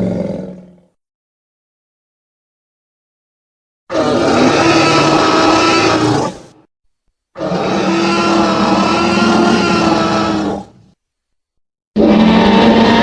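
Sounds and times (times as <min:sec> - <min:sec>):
rough dinosaur roar: 0:00.0 - 0:00.8, 0:03.9 - 0:06.6, 0:07.4 - 0:10.8, 0:12.0 - 0:13.0.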